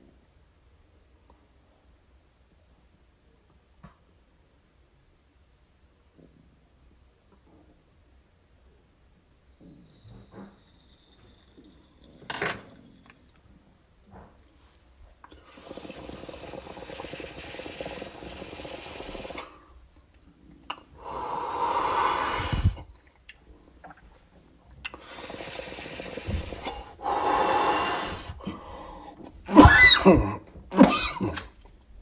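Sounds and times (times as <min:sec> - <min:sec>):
person inhaling smoke: 0:15.3 - 0:19.9, 0:20.8 - 0:22.9, 0:24.9 - 0:31.5
person exhaling: 0:21.0 - 0:22.9, 0:25.0 - 0:31.5.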